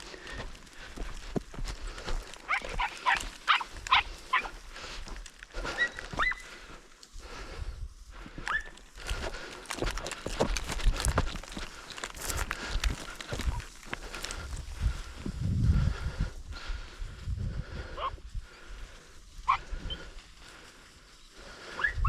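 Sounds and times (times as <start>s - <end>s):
dogs yelping: 2.5s - 4.6s, 19.5s - 20.0s.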